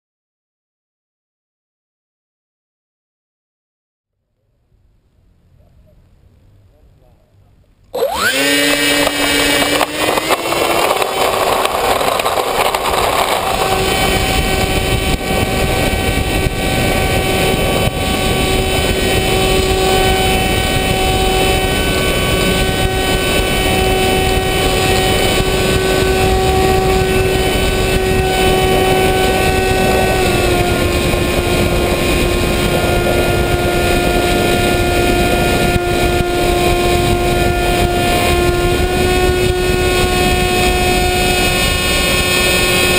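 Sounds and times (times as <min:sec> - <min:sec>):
wind noise: 0:07.6 - 0:42.9
model aircraft motor and propeller: 0:07.9 - 0:42.9.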